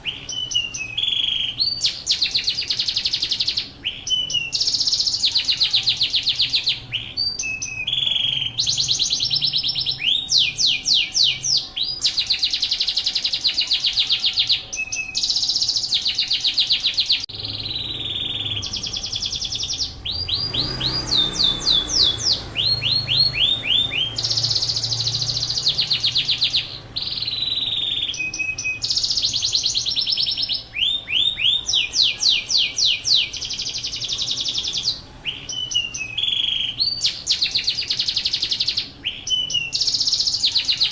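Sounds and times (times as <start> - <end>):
canary singing: 0.0 - 40.9.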